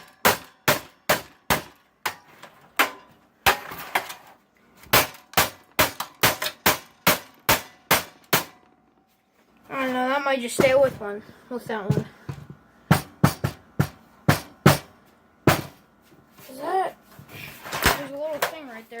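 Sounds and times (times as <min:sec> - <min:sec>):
hammer striking metal: 0:00.0 - 0:03.8, 0:04.9 - 0:08.7.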